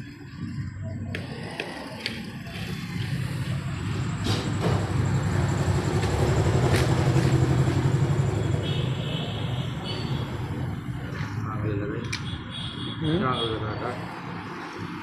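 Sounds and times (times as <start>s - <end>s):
engine running steadily: 0.3s - 11.3s.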